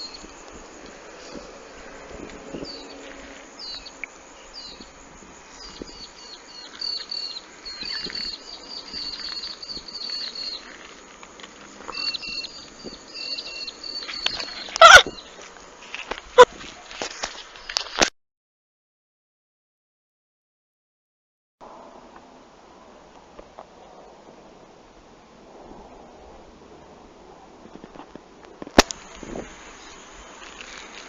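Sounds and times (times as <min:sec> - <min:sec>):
faint rural background: 0:00.0 - 0:18.1, 0:21.6 - 0:31.0
small bird chirping: 0:02.5 - 0:11.0, 0:11.8 - 0:15.4.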